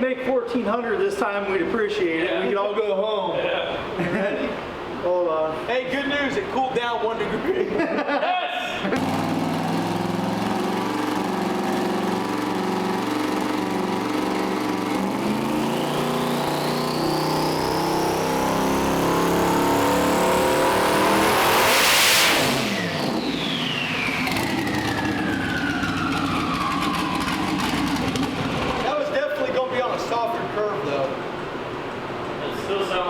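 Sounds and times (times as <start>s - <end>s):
car engine revving on dyno: 8.9s - 28.8s
high turbo whine: 8.9s - 29.1s.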